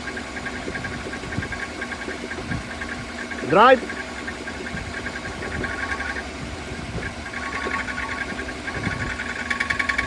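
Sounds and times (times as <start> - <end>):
car engine idling: 0.0 - 10.0
fast rhythmic rattle: 0.0 - 10.0.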